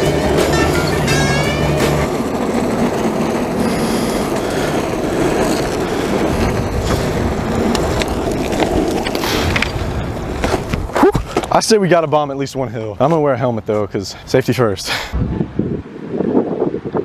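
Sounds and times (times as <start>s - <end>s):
guitar music: 0.0s - 2.2s
skateboard wheels rolling on pavement: 0.0s - 14.0s.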